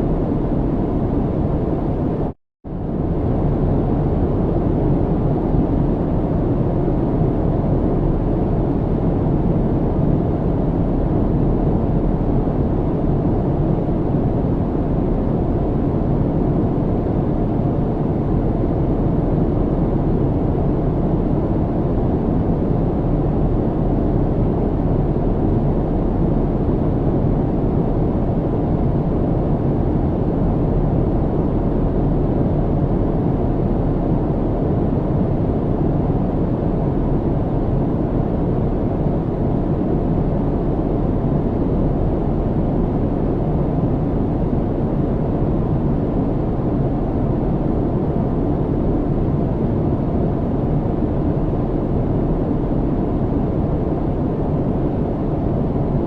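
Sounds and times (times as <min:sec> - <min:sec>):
airplane cabin engine rumble: 0:00.0 - 0:56.0.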